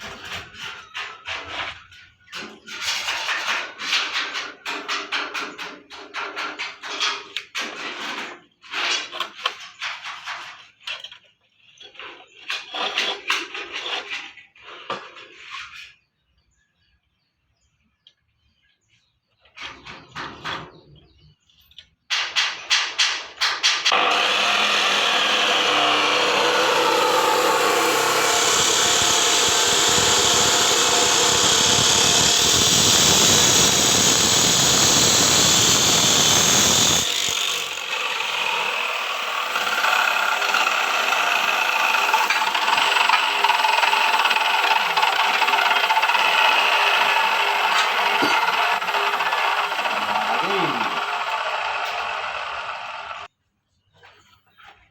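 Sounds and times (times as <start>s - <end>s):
cut-off wheel grinding whine: 23.9s - 53.3s.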